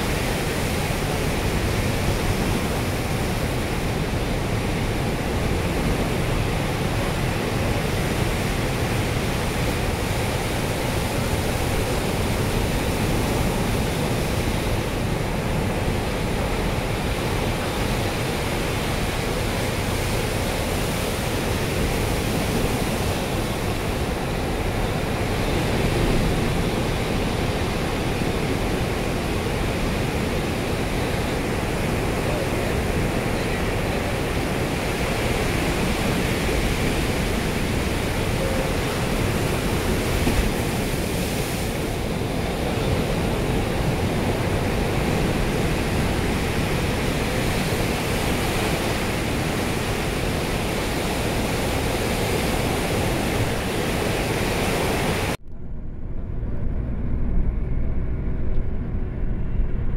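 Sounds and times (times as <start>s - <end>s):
airplane landing rush: 0.0s - 59.9s
low rumble: 55.4s - 59.9s.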